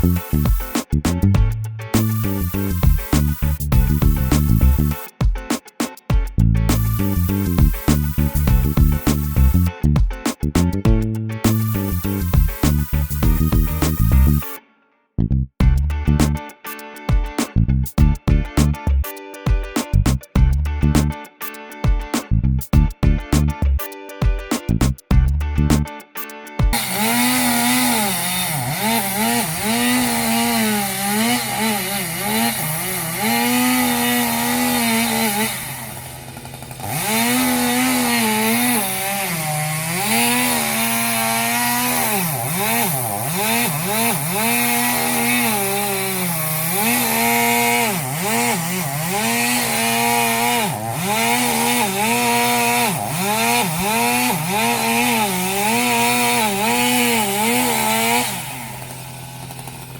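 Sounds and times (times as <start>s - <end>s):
chainsaw engine revving: 0.0s - 0.8s, 6.7s - 9.7s, 26.7s - 59.9s.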